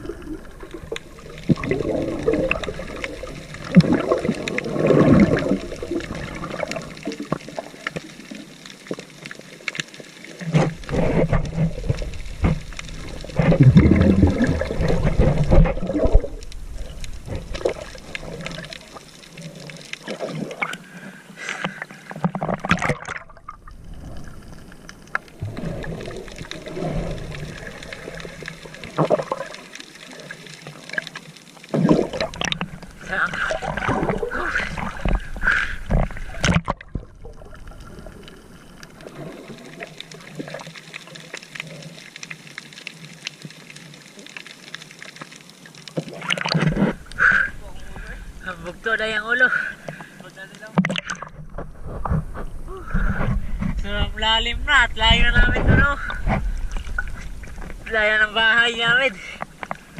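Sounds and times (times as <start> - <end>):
seawater sloshing and splashing: 0.0 - 8.5, 10.0 - 42.5, 45.9 - 48.0.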